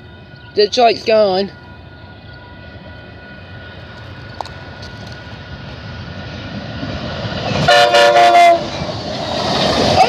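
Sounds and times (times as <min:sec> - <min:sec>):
train rumble: 0:00.0 - 0:10.0
train air horn chord: 0:07.7 - 0:08.7.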